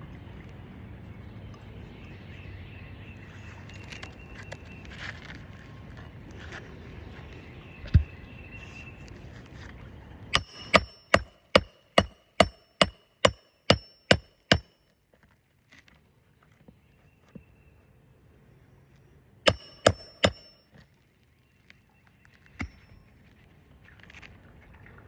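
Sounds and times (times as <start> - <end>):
hammer striking a nail: 10.4 - 14.8, 19.5 - 20.6, 22.6 - 22.9.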